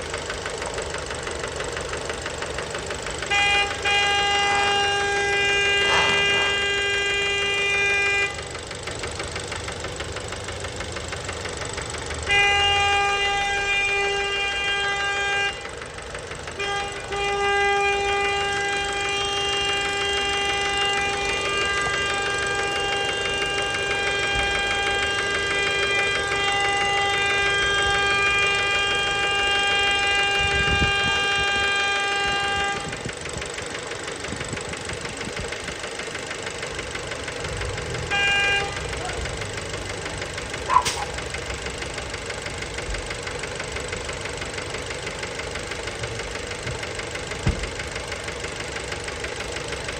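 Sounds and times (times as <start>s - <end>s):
engine idling with knock: 0.0s - 49.9s
loud horn-like tone: 3.2s - 8.5s, 12.2s - 15.8s, 16.6s - 33.4s, 37.9s - 39.3s.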